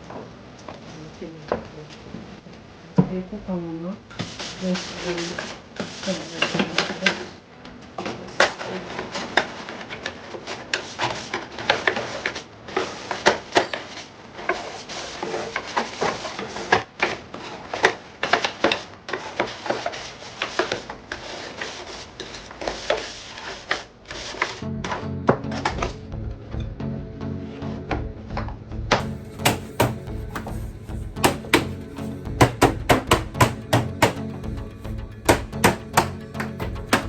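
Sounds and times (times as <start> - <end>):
rubbing: 17.4 - 24.6, 29.0 - 37.0
objects clicking and knocking: 29.0 - 34.6, 35.2 - 37.0.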